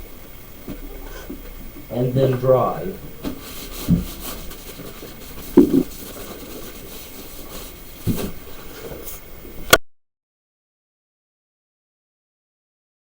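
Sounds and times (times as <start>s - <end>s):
steady low hiss: 0.0s - 9.8s
soft bumps: 3.2s - 6.9s.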